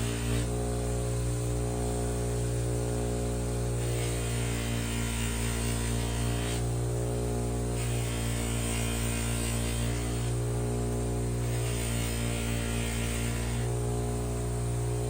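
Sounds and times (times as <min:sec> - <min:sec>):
electrical hum with buzz: 0:00.0 - 0:15.0
hiss: 0:03.8 - 0:06.7.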